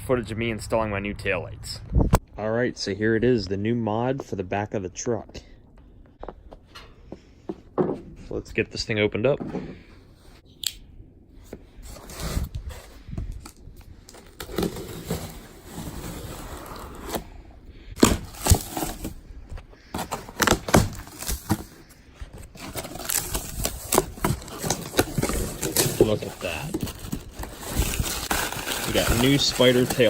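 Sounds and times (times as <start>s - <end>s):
cardboard packaging rustling: 11.8s - 17.3s, 18.0s - 30.0s.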